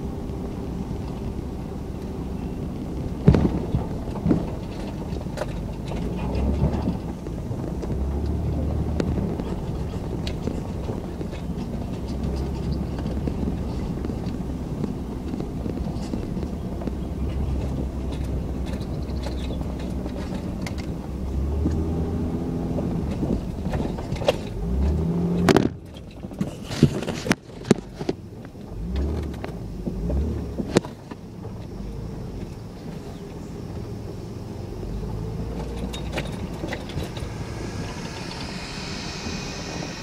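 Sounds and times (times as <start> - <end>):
car engine running: 0.0 - 40.0
low hum: 33.7 - 40.0.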